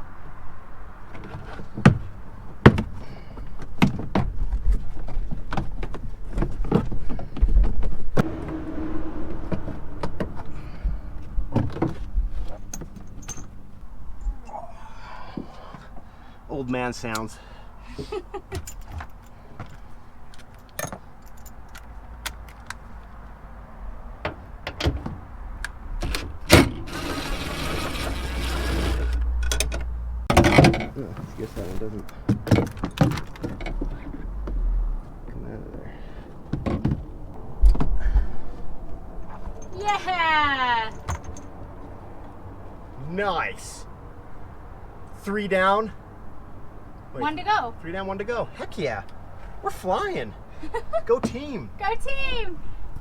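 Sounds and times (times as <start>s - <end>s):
small power tool motor running: 26.9s - 29.1s.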